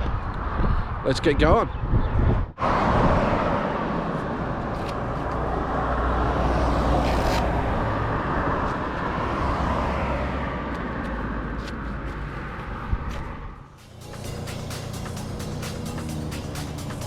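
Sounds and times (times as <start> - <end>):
road and wind noise: 0.0 - 17.0
motorcycle engine hum: 10.6 - 17.0.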